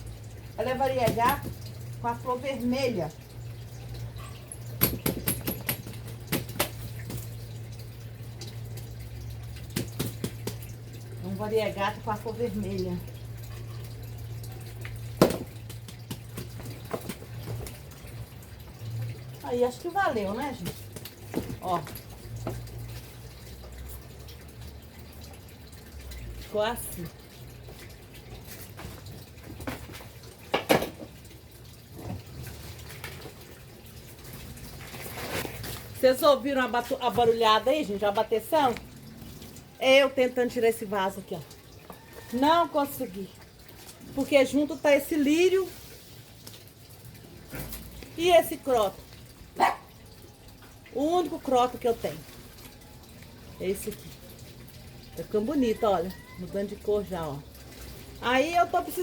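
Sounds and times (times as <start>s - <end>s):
knocking on plant pot: 15.2s - 17.2s.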